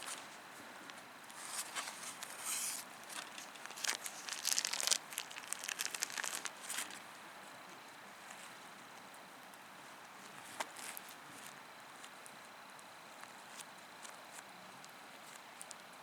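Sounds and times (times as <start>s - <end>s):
crinkling and rustling: 0.0s - 7.1s.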